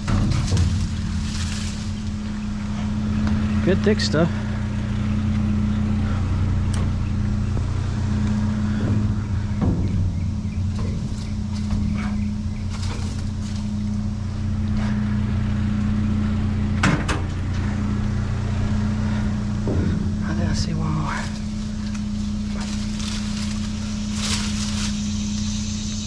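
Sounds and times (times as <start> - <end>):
vehicle engine idling: 0.0 - 26.0
knocks and clicks: 6.7 - 14.0.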